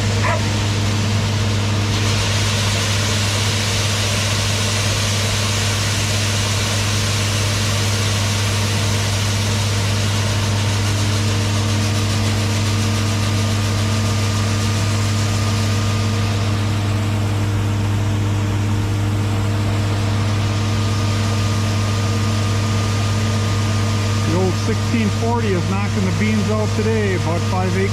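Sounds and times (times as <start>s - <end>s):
combine harvester drone: 0.0s - 27.9s
hiss of threshing: 1.9s - 5.4s.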